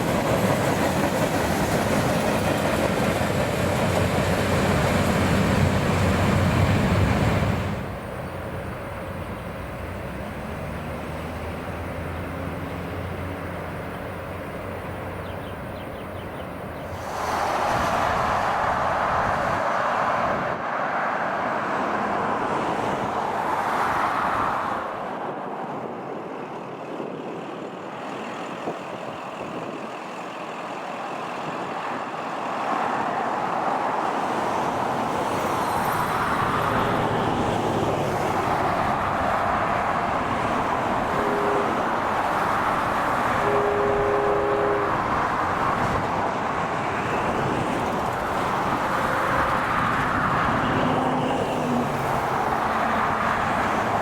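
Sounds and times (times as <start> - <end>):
vehicle rolling rush: 31.6 - 54.0.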